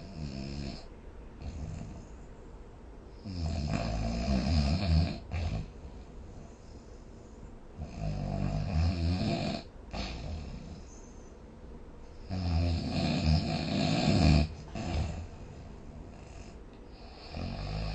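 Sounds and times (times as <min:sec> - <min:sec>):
person snoring: 0:03.2 - 0:05.8, 0:07.8 - 0:10.9, 0:12.3 - 0:17.9.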